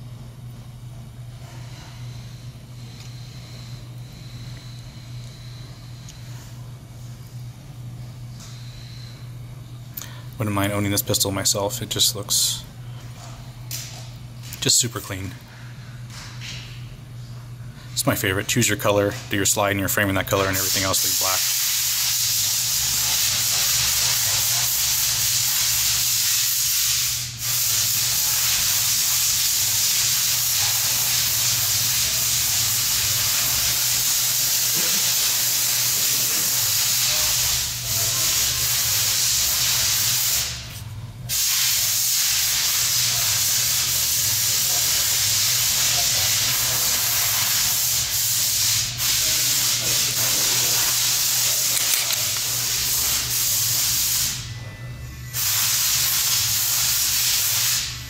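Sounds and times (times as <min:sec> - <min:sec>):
loud steady hiss: 0:20.4 - 0:40.7, 0:41.3 - 0:54.5, 0:55.4 - 0:58.0.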